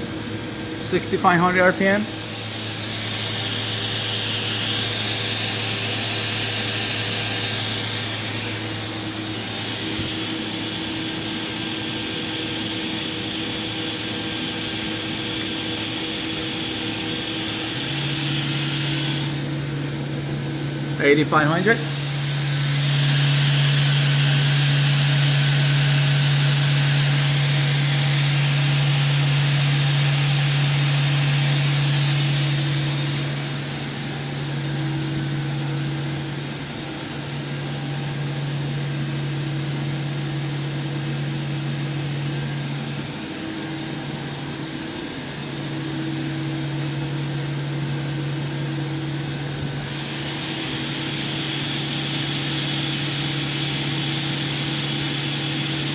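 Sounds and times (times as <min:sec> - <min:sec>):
machine spindle humming: 0:00.0 - 0:55.9
high hiss: 0:00.8 - 0:19.9, 0:21.0 - 0:35.6, 0:48.7 - 0:55.9.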